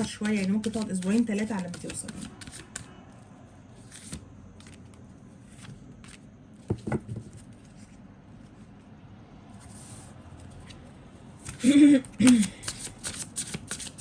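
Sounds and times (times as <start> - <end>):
cards clicking and rustling: 0.0 - 2.9, 11.4 - 14.0.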